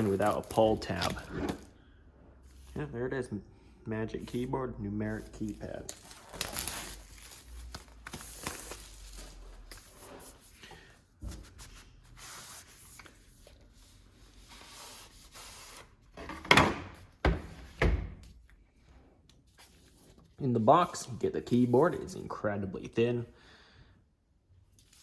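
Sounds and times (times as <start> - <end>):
cardboard and packaging rubbing: 0.0 - 1.7.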